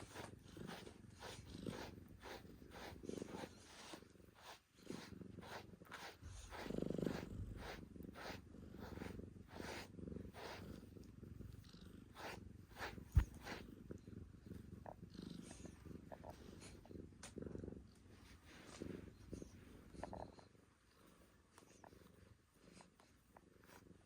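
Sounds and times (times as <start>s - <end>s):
brush rasping through fur: 0.0s - 13.9s, 21.0s - 24.0s
cat purring: 0.0s - 24.0s.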